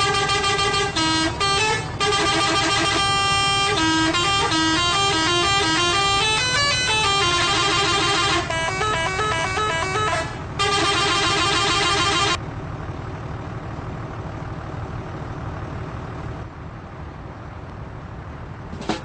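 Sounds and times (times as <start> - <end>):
vehicle idling rumble: 0.0 - 19.0.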